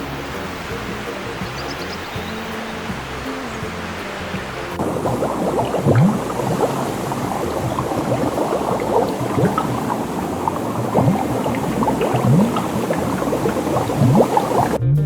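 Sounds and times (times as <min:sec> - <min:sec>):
water bubbling and splashing: 0:00.0 - 0:14.8
low rising bubble-like blip: 0:04.8 - 0:14.8.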